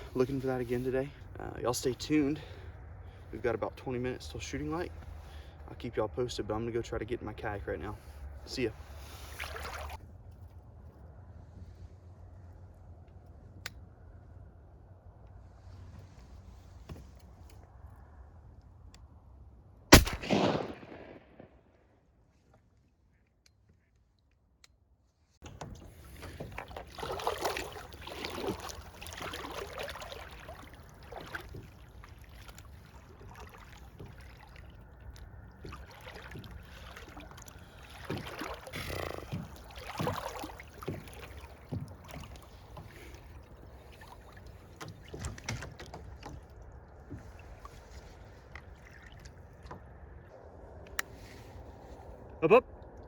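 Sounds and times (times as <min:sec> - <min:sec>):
water sloshing around a kayak: 0:00.0 - 0:13.6, 0:25.4 - 0:53.0
paddle strokes: 0:08.0 - 0:10.4, 0:25.4 - 0:49.9, 0:51.1 - 0:52.1.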